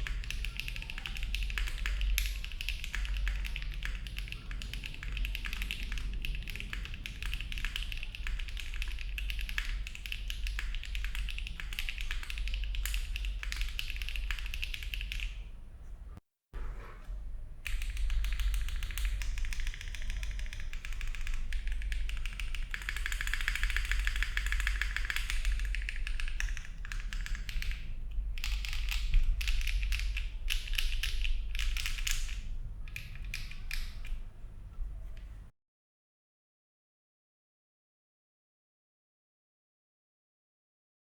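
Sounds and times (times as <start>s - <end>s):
mechanical keyboard typing: 0.0s - 15.4s, 17.6s - 34.3s.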